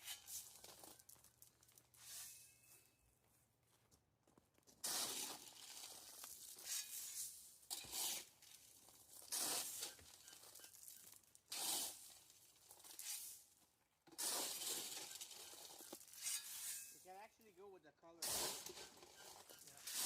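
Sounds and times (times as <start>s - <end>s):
shovel scraping crushed stone: 0.0s - 1.2s, 2.0s - 2.7s, 4.8s - 13.5s, 14.1s - 17.1s, 18.2s - 20.0s.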